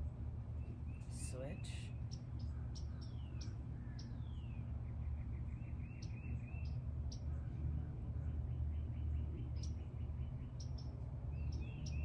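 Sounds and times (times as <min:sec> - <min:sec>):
birds chirping: 0:08.3 - 0:12.0.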